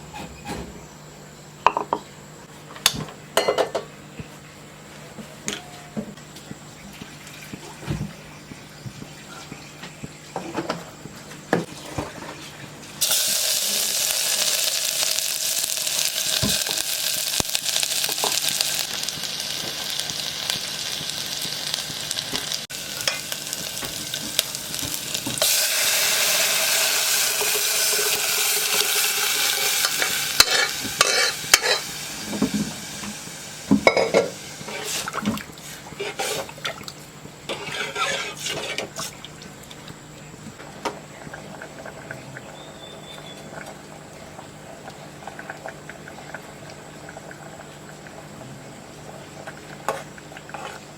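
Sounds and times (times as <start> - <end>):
food sizzling in hot oil: 13.0 - 36.6, 37.5 - 39.2.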